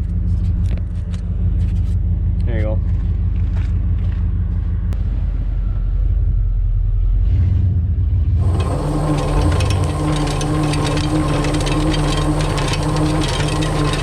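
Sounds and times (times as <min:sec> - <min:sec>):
truck engine rumbling: 0:08.3 - 0:14.0
spreader motor whine: 0:08.4 - 0:14.0
spreader ticking and rattling: 0:08.4 - 0:14.0.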